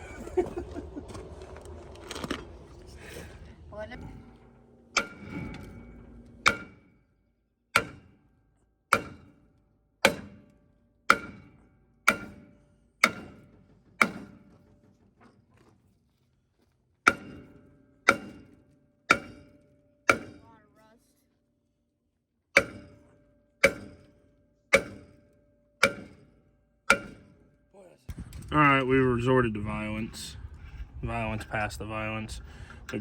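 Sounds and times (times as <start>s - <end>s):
hammer striking metal drum: 4.0s - 7.1s, 7.8s - 8.3s, 8.9s - 15.0s, 17.1s - 20.5s, 22.6s - 28.5s.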